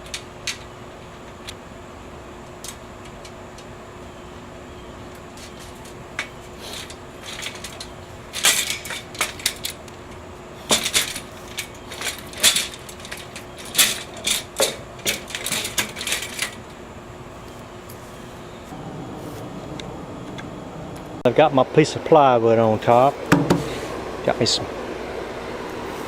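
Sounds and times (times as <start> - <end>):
faint steady hum: 0.0 - 26.0
metal parts clinking and clanking: 5.4 - 16.8.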